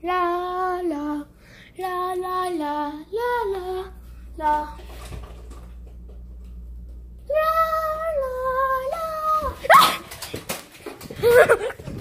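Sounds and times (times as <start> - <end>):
child singing: 0.0 - 4.8, 7.3 - 9.6.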